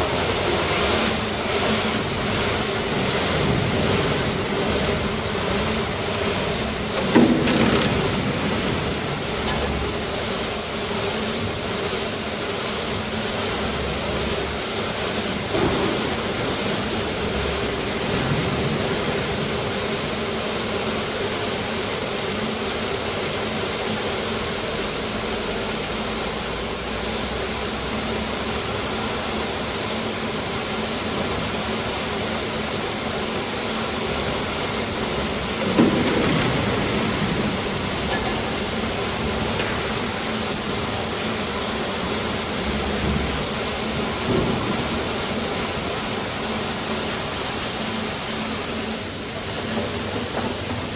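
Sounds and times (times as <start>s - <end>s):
machine high hiss and hum: 0.0s - 50.9s.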